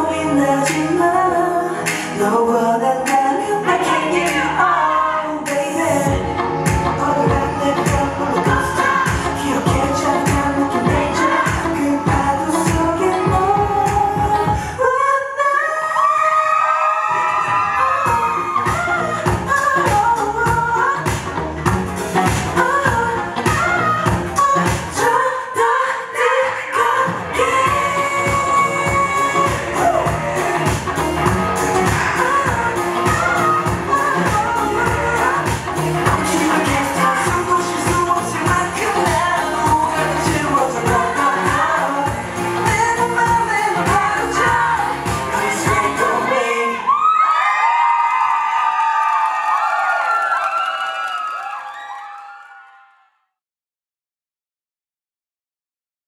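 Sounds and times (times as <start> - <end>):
pop song with sung melody: 0.0 - 47.8
steady drum beat: 27.6 - 46.0.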